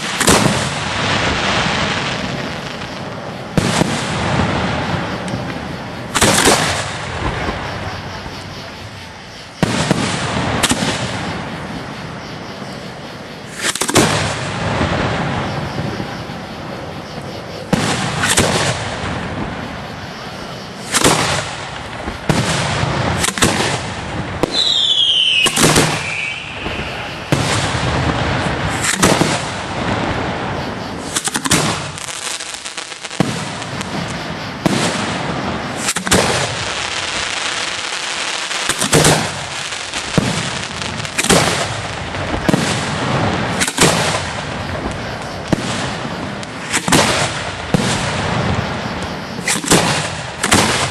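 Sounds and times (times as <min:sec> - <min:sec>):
fireworks bangs: 0:00.0 - 0:50.9
fireworks crackling: 0:00.0 - 0:50.9
descending whistle: 0:24.5 - 0:27.3.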